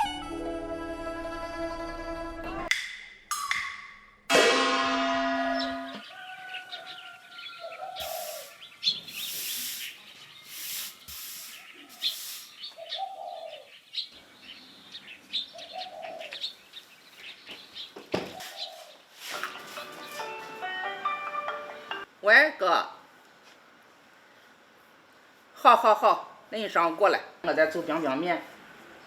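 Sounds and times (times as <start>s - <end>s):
struck ringing tone: 4.3s - 6.0s
small birds chirping: 5.6s - 19.2s
dove cooing: 12.8s - 13.7s, 15.6s - 16.4s.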